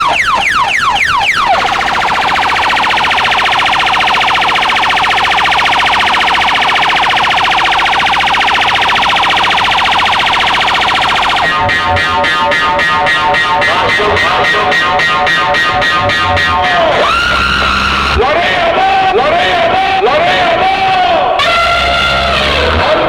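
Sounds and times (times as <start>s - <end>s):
electronic siren warble: 0.0s - 18.2s
beat-driven music: 0.0s - 18.7s.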